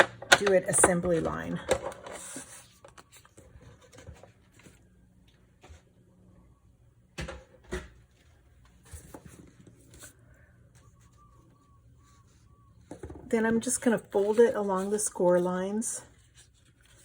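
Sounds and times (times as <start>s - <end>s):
cardstock rustling: 13.6s - 17.0s.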